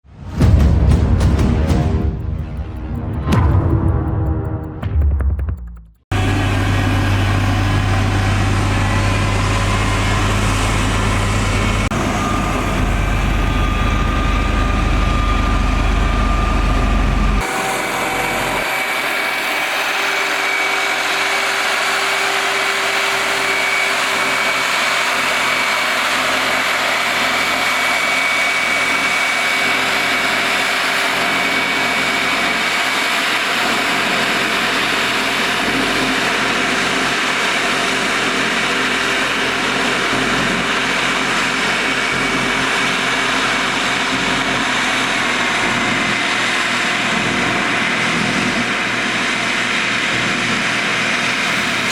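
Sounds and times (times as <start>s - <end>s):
heavy machine engine running: 0.3s - 51.9s
high-pitched whine: 1.3s - 51.9s.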